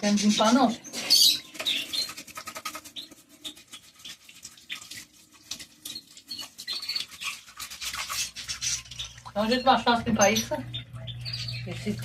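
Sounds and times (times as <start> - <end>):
brush scrubbing: 0.0 - 10.4.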